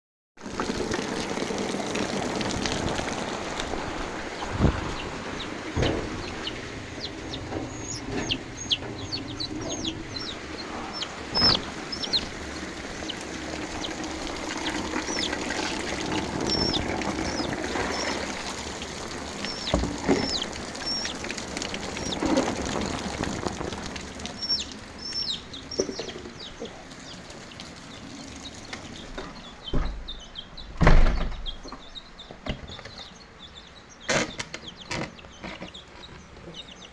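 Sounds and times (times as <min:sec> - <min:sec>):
loud knocks: 0:04.4 - 0:26.4
baby chick peeping: 0:04.6 - 0:36.9.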